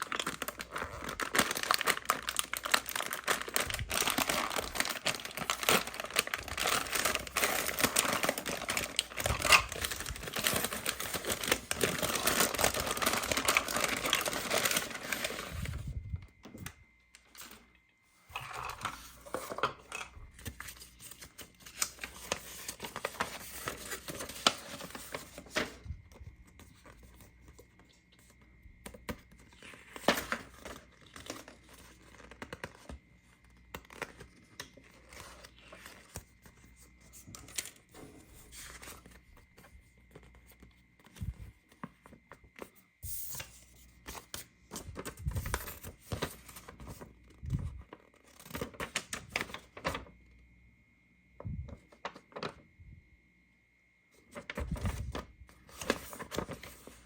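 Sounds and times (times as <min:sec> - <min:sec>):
packaging crinkling and tearing: 0:00.0 - 0:15.8, 0:20.3 - 0:25.8.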